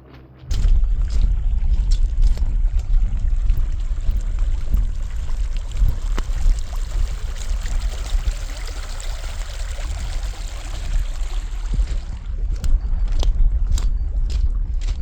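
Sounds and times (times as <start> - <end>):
floodwater rushing: 0.5 - 12.3.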